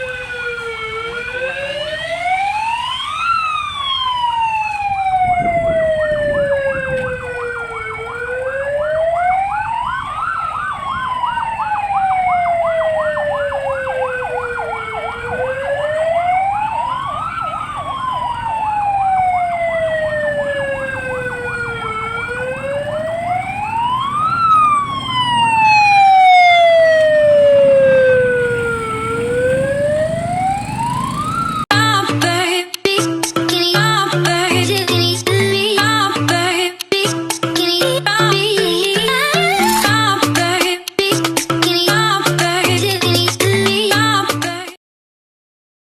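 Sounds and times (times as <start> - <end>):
warbling siren: 0.0 - 31.7, 38.1 - 40.3
vehicle siren wailing: 0.0 - 31.8, 33.3 - 44.4
music: 31.7 - 44.8.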